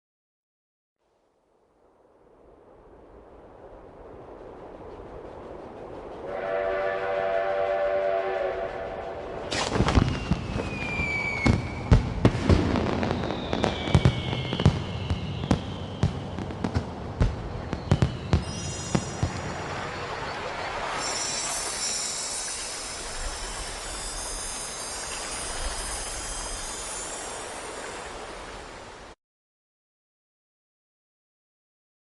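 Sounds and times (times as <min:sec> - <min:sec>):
steam train whistle: 0:06.2 - 0:09.6
whistling rockets: 0:06.3 - 0:28.3
crackling firework bursts: 0:09.4 - 0:28.8
firework bangs: 0:09.5 - 0:25.1.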